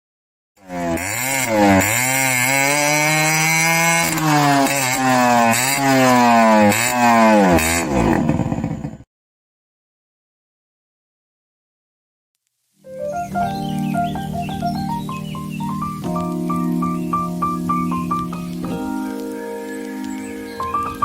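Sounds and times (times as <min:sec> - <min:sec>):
engine revving: 0:00.6 - 0:09.0.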